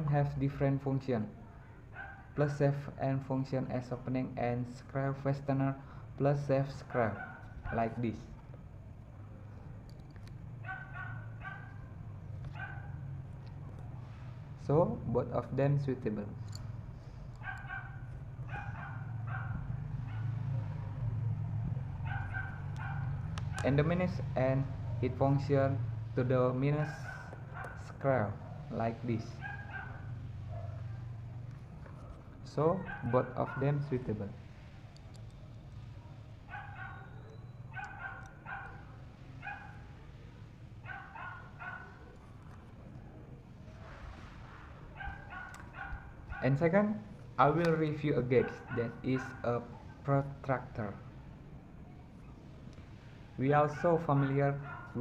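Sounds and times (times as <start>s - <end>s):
steady low hum: 0.0s - 55.0s
dog barking: 1.9s - 2.4s, 6.9s - 7.8s, 10.6s - 13.1s, 17.4s - 20.8s, 21.9s - 23.8s, 26.8s - 28.8s, 29.4s - 31.3s, 32.8s - 33.8s, 36.0s - 40.1s, 40.8s - 42.2s, 43.7s - 46.6s, 48.4s - 50.0s, 53.7s - 55.0s.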